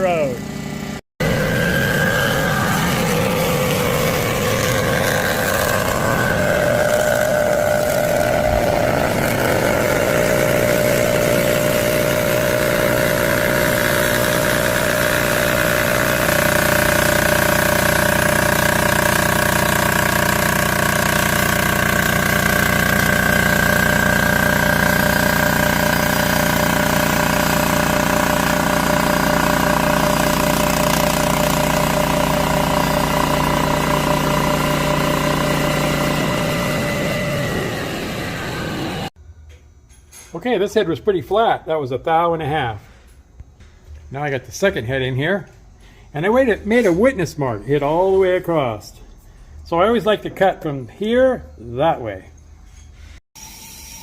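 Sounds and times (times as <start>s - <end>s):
milling machine drone: 0.0s - 39.2s.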